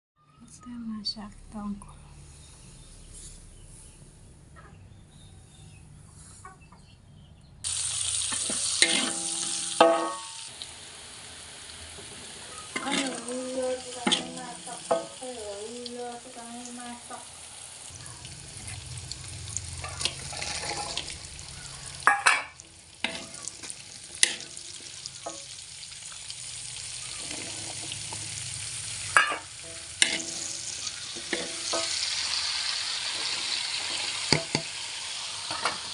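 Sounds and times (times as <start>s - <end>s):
food sizzling in hot oil: 7.6s - 35.9s.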